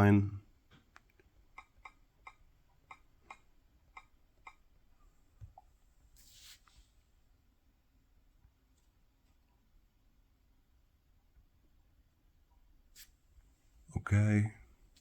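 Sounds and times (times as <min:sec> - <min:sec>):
soft hiss: 0:05.0 - 0:07.5, 0:12.6 - 0:15.0.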